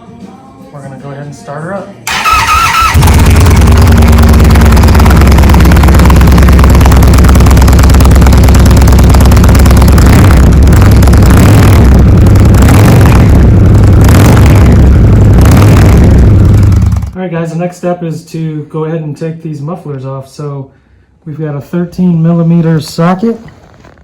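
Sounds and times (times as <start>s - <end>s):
motorcycle engine idling loudly: 2.1s - 17.2s.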